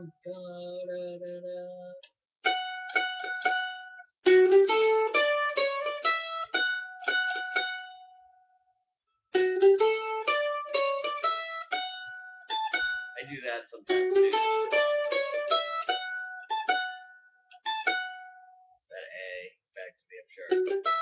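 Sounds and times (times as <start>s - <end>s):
mandolin picking a tune: 0.0s - 8.6s, 9.3s - 18.8s, 20.4s - 21.0s.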